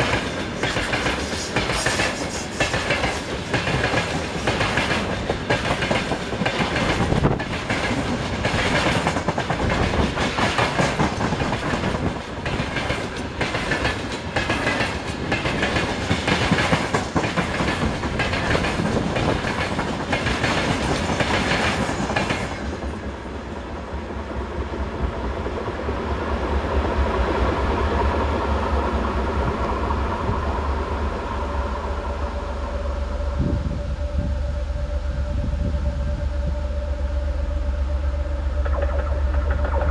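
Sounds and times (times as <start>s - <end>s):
train wheels clickety-clack: 0.0s - 23.3s, 38.6s - 39.9s
low rumble with held tone: 30.3s - 39.9s.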